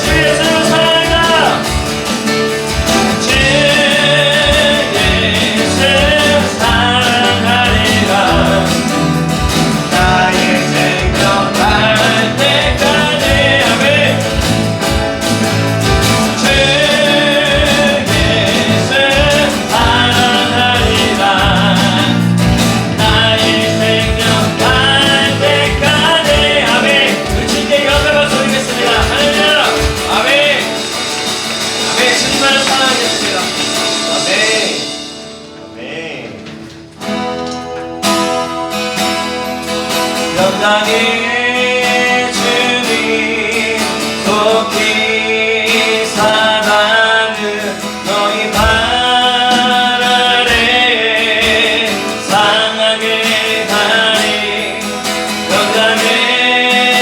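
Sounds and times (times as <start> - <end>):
electronic drums steady beat: 0.0 - 35.6
voices singing: 0.0 - 36.9, 40.0 - 57.0
acoustic guitar: 0.0 - 57.0
bass guitar: 0.0 - 57.0
keyboard: 0.0 - 57.0.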